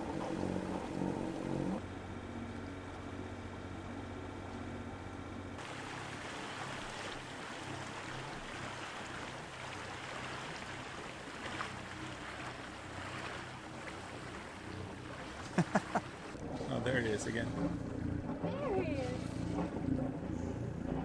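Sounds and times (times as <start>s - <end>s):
water rushing: 0.0s - 1.8s, 5.6s - 17.8s
evenly pitched hum: 0.0s - 21.0s
faint low engine hum: 0.0s - 21.0s
wind: 0.0s - 21.0s.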